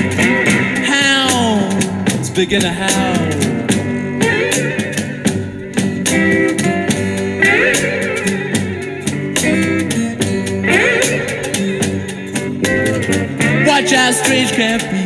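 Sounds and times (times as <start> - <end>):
slide guitar: 0.0 - 15.0
slow blues music: 0.0 - 15.0
person singing: 0.5 - 5.2, 7.4 - 12.4, 13.4 - 15.0.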